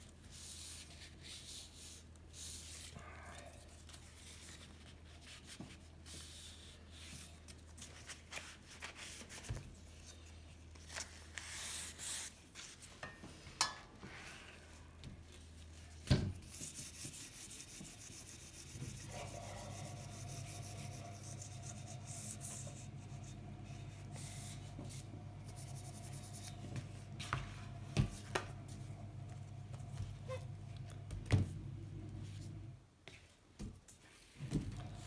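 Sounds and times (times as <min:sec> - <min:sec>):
hand rubbing on painted metal: 0:16.4 - 0:27.0
steady low hum: 0:18.2 - 0:32.8.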